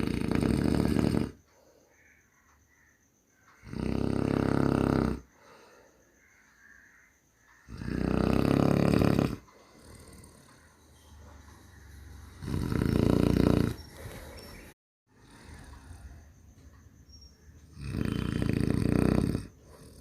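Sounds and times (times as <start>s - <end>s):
person snoring: 0.0s - 1.4s, 3.6s - 5.6s, 7.7s - 10.7s, 12.2s - 16.2s, 17.7s - 20.0s
quiet breathing: 0.8s - 20.0s.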